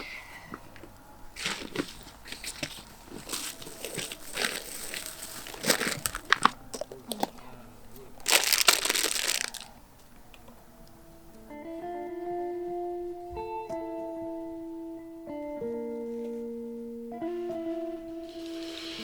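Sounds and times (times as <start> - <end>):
plastic bags crinkling: 1.4 - 7.3, 8.2 - 9.8
bug spray hissing: 18.2 - 19.0.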